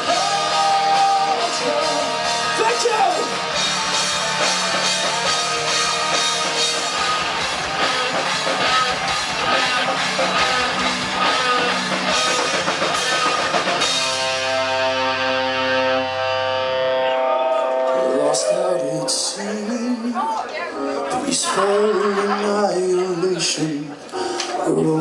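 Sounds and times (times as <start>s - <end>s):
drum kit: 0.0s - 16.8s
electric guitar: 0.0s - 25.0s.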